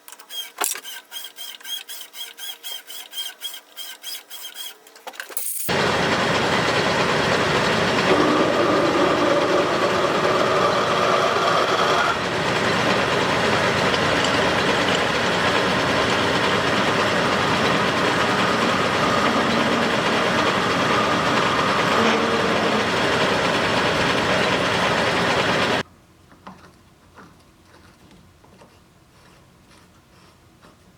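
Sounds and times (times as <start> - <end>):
machine running under load: 5.7 - 25.8.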